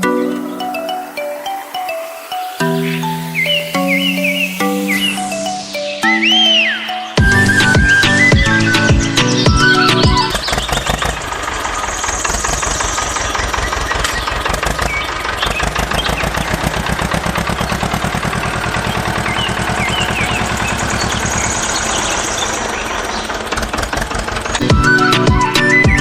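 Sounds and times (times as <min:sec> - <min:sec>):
bird chirps: 0:00.0 - 0:16.8, 0:18.0 - 0:23.8
engine idling: 0:07.2 - 0:26.0.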